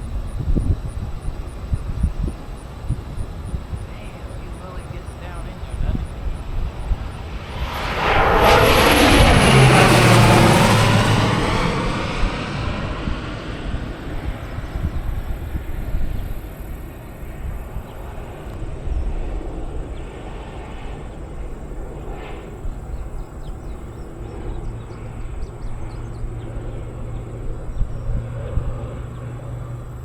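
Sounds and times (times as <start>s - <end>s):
low rumble: 0.0s - 20.2s
airplane engine overhead: 0.0s - 30.0s
steady low hum: 0.0s - 30.0s.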